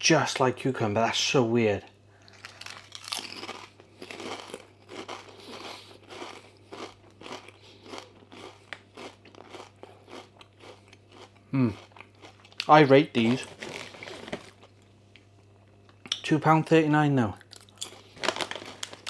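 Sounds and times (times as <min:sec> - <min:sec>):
person chewing crisps: 0:02.2 - 0:15.3, 0:17.4 - 0:19.0.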